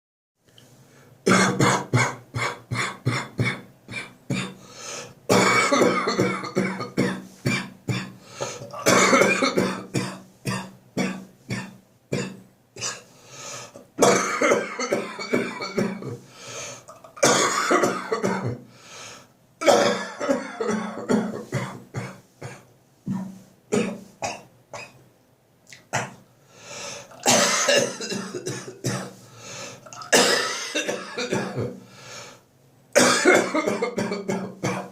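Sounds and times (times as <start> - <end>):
chesty coughing: 1.3 - 4.6, 5.3 - 13.1, 14.0 - 16.2, 17.0 - 18.6, 19.6 - 25.0, 27.1 - 29.2, 29.9 - 31.8, 33.0 - 34.9.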